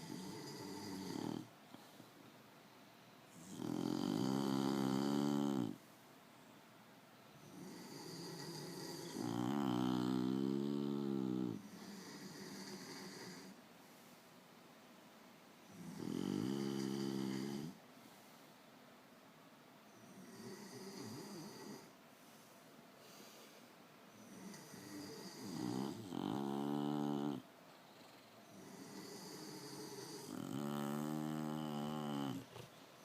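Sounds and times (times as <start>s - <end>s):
dog snoring: 0.0s - 1.5s, 3.3s - 5.8s, 7.4s - 13.6s, 15.7s - 17.8s, 20.0s - 21.9s, 24.2s - 32.8s.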